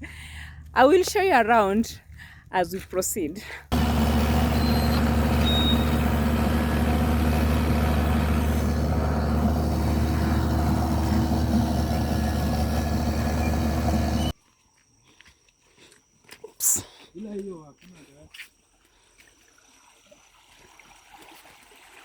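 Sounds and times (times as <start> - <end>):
diesel engine running: 3.6 - 14.4.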